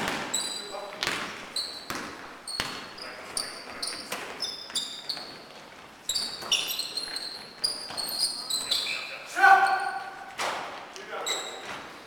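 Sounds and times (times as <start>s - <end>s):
basketball bouncing on gym floor: 0.0s - 5.3s
sneaker squeaks: 0.0s - 10.3s, 11.1s - 12.0s.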